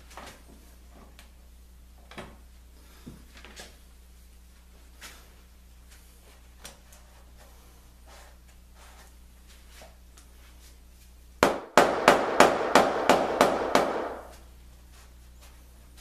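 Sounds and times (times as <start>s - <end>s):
hammer striking wood: 11.4s - 14.4s.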